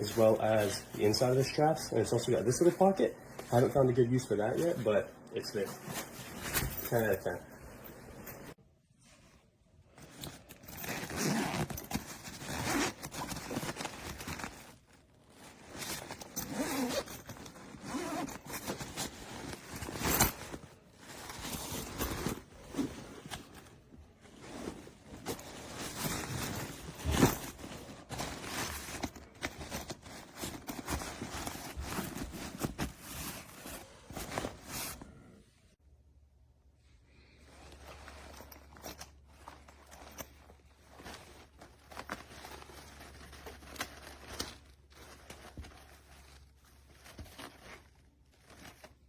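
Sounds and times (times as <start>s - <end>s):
fabric rustling: 0.0s - 35.4s, 37.2s - 49.0s
backpack zippers: 10.4s - 14.5s, 15.8s - 20.4s.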